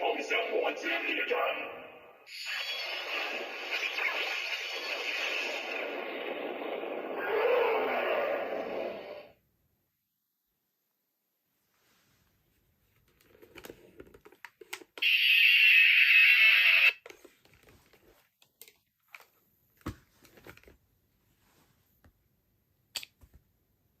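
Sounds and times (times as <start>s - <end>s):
electronic hissing effect: 2.3s - 9.3s.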